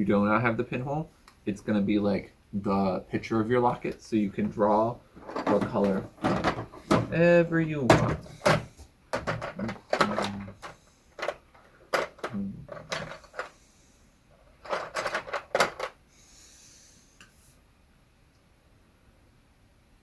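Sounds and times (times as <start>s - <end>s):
craft supplies clattering on table: 5.2s - 7.2s, 7.9s - 13.5s, 14.6s - 15.9s.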